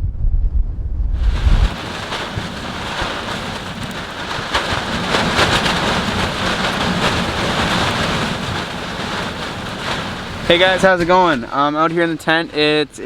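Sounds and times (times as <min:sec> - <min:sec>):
blizzard wind rushing: 0:00.0 - 0:11.6
snow ticking on tent canvas: 0:01.2 - 0:12.8.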